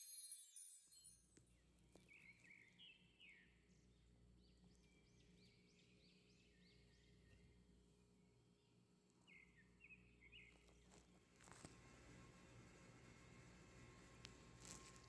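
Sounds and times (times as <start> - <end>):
faint bird chirps: 2.0 - 7.6.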